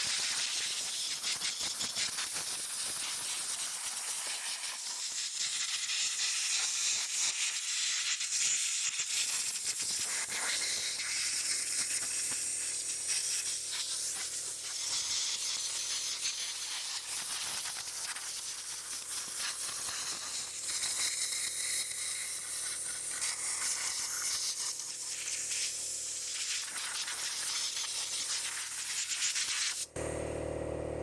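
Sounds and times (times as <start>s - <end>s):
steady low hum: 29.9s - 31.0s.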